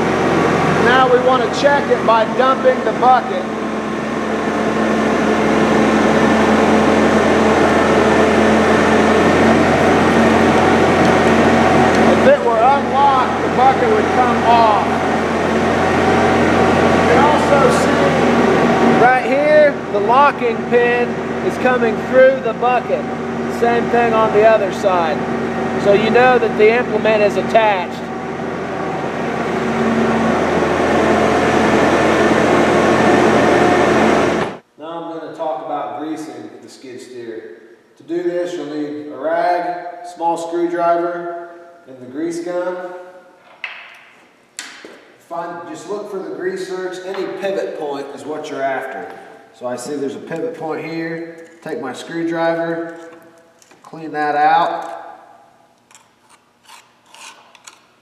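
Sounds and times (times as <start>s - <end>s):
hydraulics tilting bucket: 0.0s - 34.6s
skid steer engine running: 0.0s - 34.6s.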